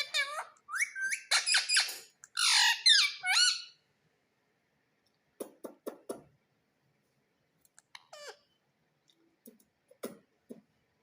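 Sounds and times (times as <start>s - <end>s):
parrot squawking and calling: 0.0s - 3.8s, 7.9s - 8.5s.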